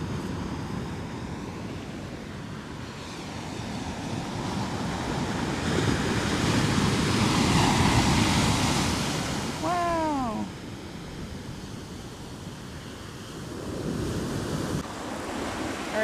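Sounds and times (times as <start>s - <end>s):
ocean wave breaking: 2.7s - 10.8s.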